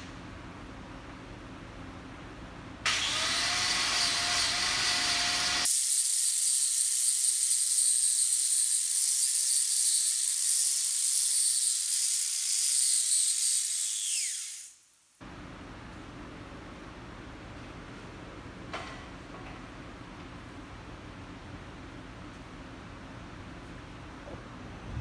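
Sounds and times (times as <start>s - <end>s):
falling whistle of welding rod: 13.2s - 14.8s.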